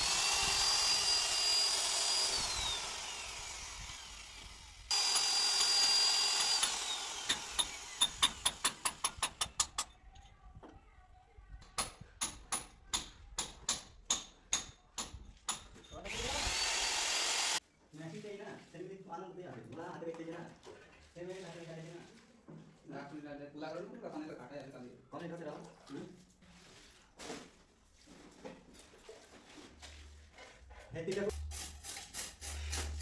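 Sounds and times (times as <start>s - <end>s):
power tool motor running: 0.0s - 9.4s, 16.1s - 17.6s.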